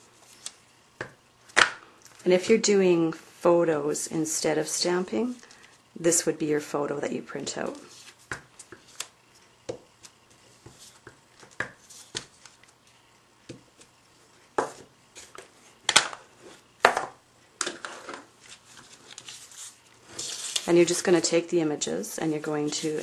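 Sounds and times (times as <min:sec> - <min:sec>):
paper rustling: 0:18.0 - 0:21.0, 0:22.2 - 0:23.0.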